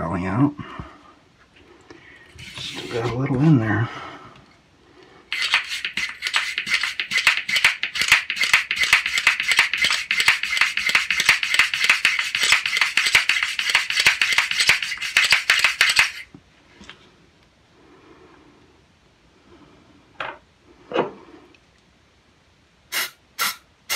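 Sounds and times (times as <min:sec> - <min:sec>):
bore brush scraping in barrel: 0:02.4 - 0:03.2, 0:05.3 - 0:16.2.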